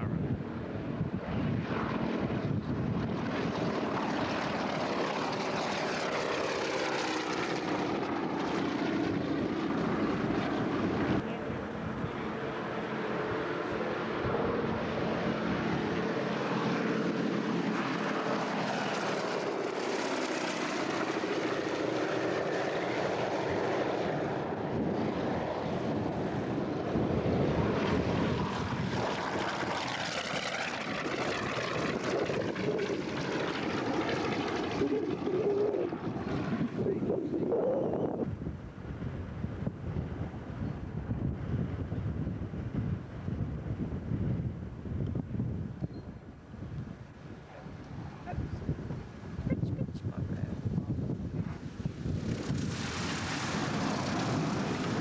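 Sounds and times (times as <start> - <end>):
propeller aircraft engine running: 0.0 - 55.0.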